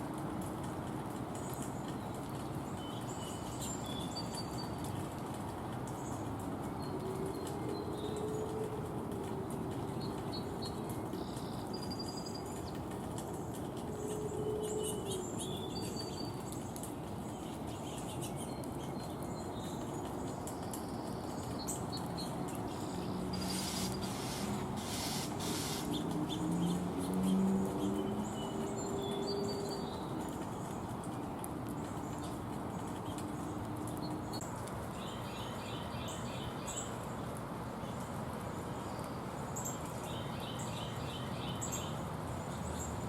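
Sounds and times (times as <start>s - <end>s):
low steady bird calls: 13.8s - 37.2s
birds chirping: 14.1s - 37.0s
wing rustles or flutters: 19.8s - 34.8s.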